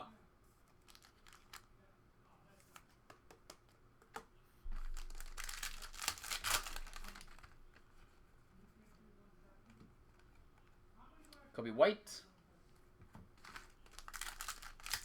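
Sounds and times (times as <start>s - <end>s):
card pack wrapper tearing and crinkling: 0.8s - 1.7s, 4.1s - 7.9s, 13.4s - 15.0s
light clicks of cards handled: 2.5s - 8.2s.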